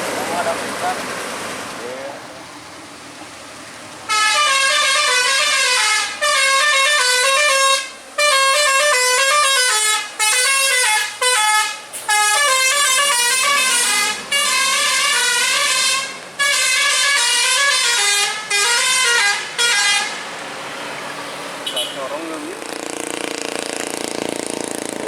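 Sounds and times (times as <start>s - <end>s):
bus horn playing melody: 4.1s - 20.3s.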